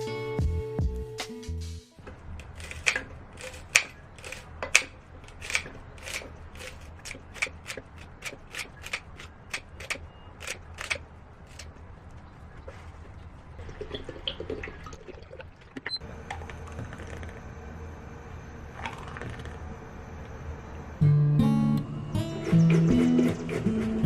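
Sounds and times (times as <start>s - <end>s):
low steady hum: 10.1s - 22.8s.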